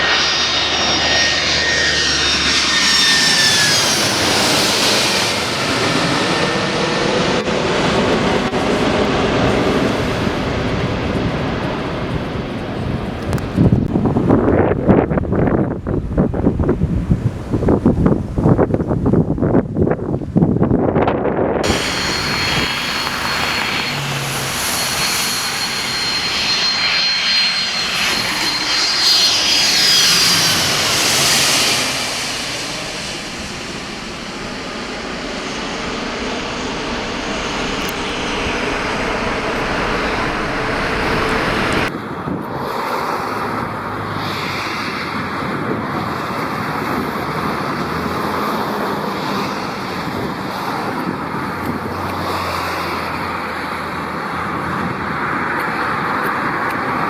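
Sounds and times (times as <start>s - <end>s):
jet airliner passing overhead: 0.0s - 57.0s
thin steady high tone: 21.6s - 30.4s.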